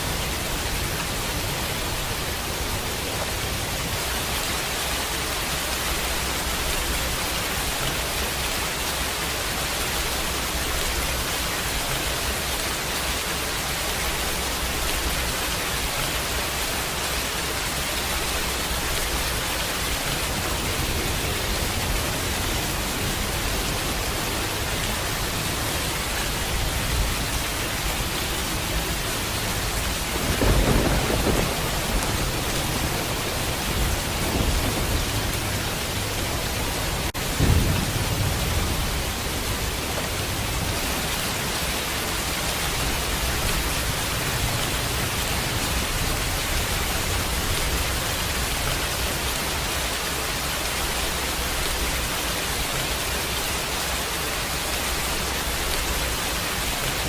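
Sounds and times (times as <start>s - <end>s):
rain hiss: 0.0s - 57.0s
low thunder rumbles: 18.0s - 49.0s.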